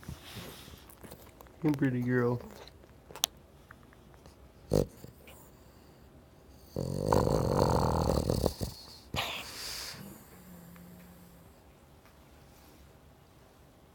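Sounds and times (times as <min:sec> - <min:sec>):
dog snoring: 0:04.7 - 0:11.6
breathy snuffle: 0:06.8 - 0:11.5.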